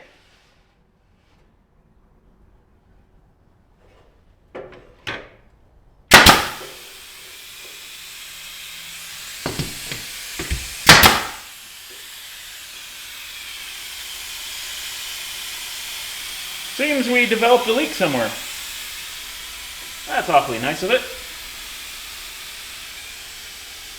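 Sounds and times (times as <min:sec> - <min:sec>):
nail gun firing into wood: 0:06.1 - 0:07.0, 0:09.4 - 0:12.0
compressed air hissing: 0:06.1 - 0:23.9
light knocks: 0:09.5 - 0:10.8.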